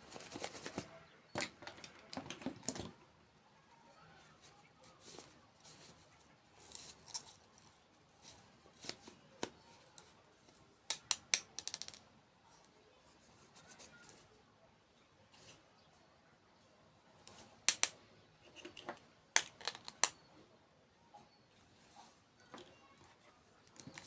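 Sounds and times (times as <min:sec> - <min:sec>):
small objects clicking and tapping: 0:10.9 - 0:12.1, 0:17.3 - 0:20.3, 0:23.6 - 0:24.0.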